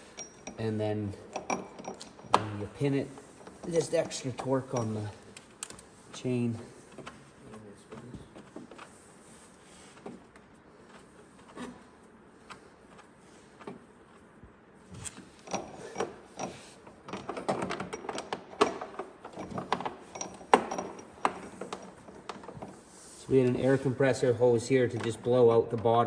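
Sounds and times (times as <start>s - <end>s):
metallic clicks and clanks of tools: 0.0s - 2.8s, 3.4s - 6.3s, 15.1s - 22.7s.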